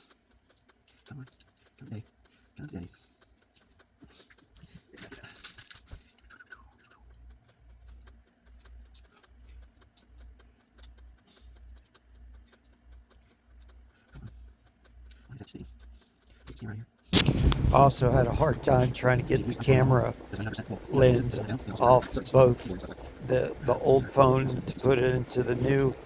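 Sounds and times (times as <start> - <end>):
low rumble: 17.2 - 26.0.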